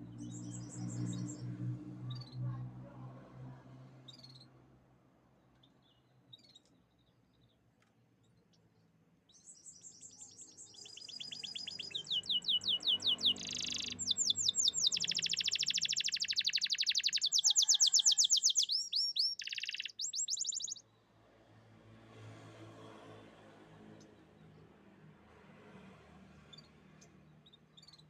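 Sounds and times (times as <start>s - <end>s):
canary singing fast trills: 9.3s - 20.8s.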